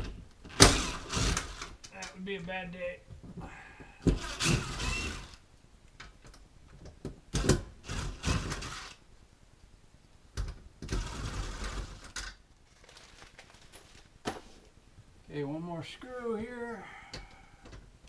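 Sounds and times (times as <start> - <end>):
power drill running: 0.5 - 1.8, 4.1 - 5.4, 7.8 - 9.0.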